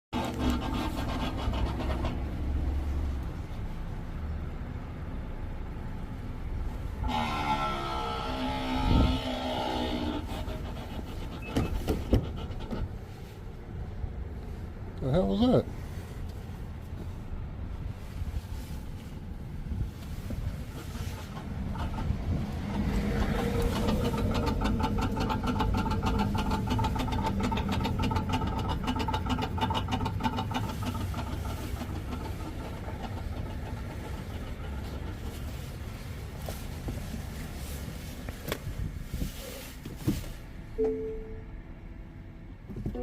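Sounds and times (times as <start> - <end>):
car grinding buzzing noise: 0.2 - 2.9, 6.8 - 13.3, 19.7 - 38.0.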